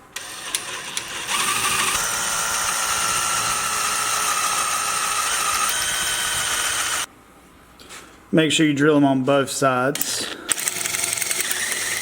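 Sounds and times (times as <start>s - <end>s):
power drill whining: 0.0s - 7.1s, 10.5s - 12.0s
drill clicks: 0.1s - 7.1s, 10.5s - 12.0s.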